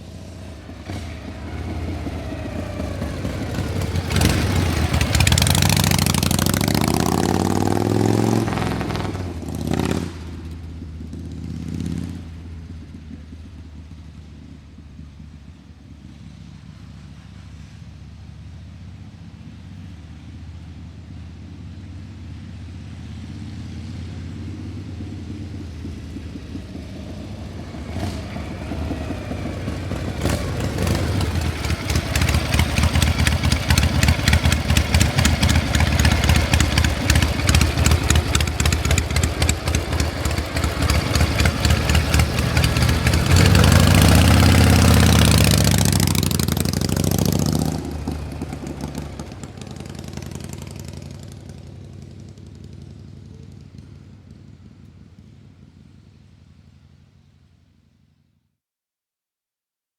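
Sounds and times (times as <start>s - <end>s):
engine running and revving: 0.0s - 55.7s.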